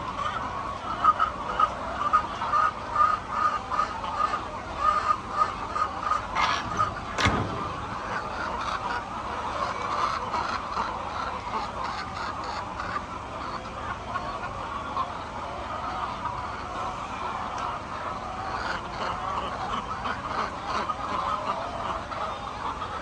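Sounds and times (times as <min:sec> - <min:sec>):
hens clucking: 0:00.0 - 0:23.0
sharp knock: 0:06.6 - 0:09.0.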